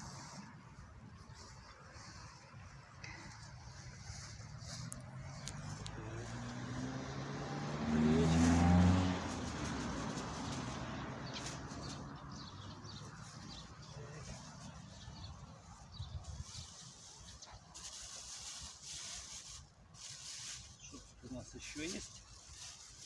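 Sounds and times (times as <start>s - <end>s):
car driving past: 4.4s - 14.9s.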